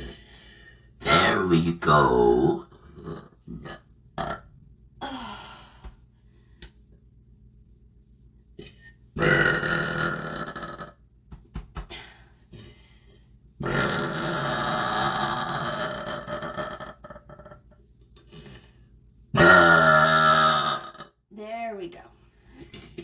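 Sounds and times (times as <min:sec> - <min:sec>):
woman burping: 0:03.0 - 0:05.2, 0:08.6 - 0:11.0, 0:13.6 - 0:17.7.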